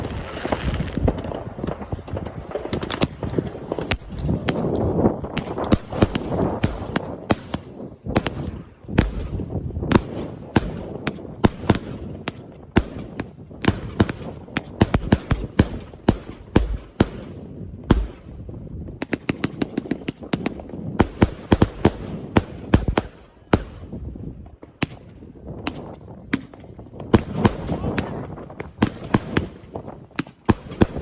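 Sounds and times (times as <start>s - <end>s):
fireworks cracking and banging: 0.0s - 31.0s.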